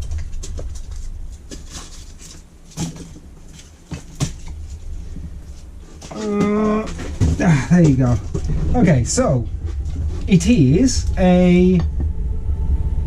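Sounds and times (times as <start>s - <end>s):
polystyrene packing rustling: 0.0s - 10.4s.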